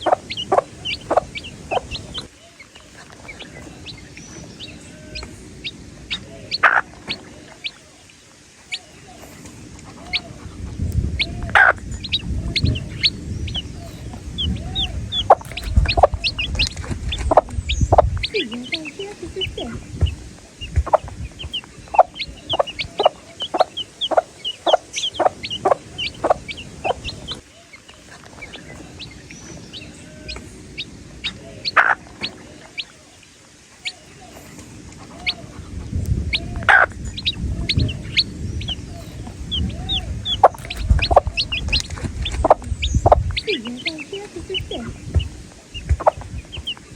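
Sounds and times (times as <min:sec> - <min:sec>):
chicks peeping: 0:00.0 - 0:46.9
louder lower bird calls: 0:00.0 - 0:46.9
low rumble: 0:09.5 - 0:27.4, 0:35.2 - 0:46.9.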